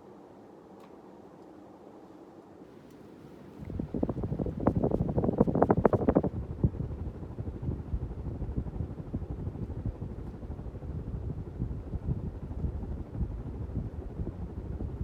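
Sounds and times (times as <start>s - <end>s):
ceiling fan running: 0.0s - 15.0s
wind buffeting microphone: 3.4s - 15.0s.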